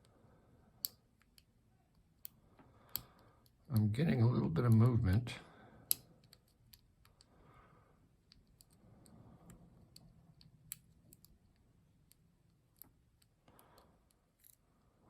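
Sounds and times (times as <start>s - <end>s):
lock pick metallic clicks: 5.9s - 7.3s, 9.4s - 14.6s.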